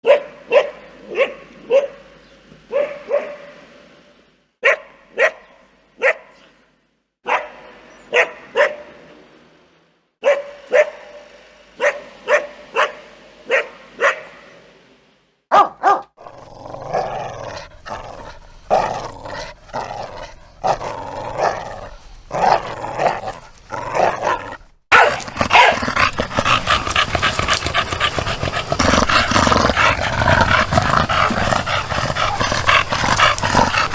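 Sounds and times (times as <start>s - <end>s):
dog barking: 0.0s - 2.1s, 2.7s - 3.6s, 4.6s - 6.4s, 7.2s - 9.0s, 10.2s - 14.4s, 15.5s - 16.3s, 22.3s - 33.9s
dog growling: 16.0s - 33.9s.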